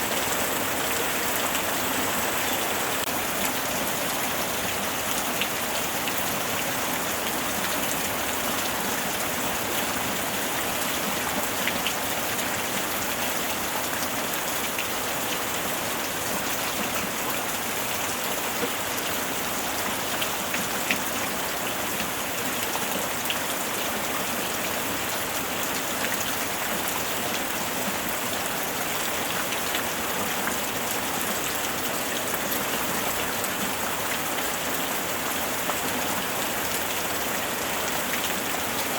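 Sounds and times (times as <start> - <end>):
steady gentle rain: 0.0 - 38.9.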